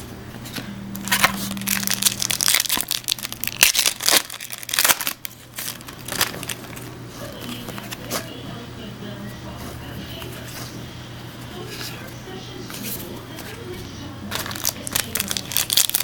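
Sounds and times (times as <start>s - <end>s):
foil tearing: 1.0s - 8.2s, 14.3s - 16.0s
foil wrapper crinkling: 1.0s - 8.3s, 14.3s - 16.0s.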